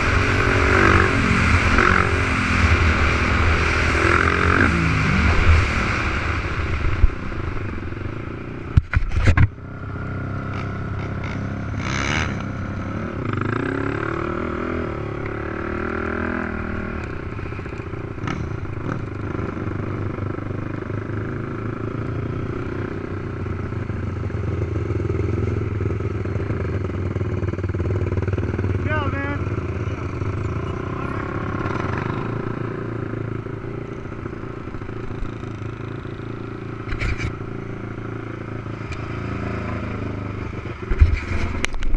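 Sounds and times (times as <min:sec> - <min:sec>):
quad engines revving: 0:00.0 - 0:05.8, 0:10.0 - 0:17.2, 0:24.5 - 0:41.8.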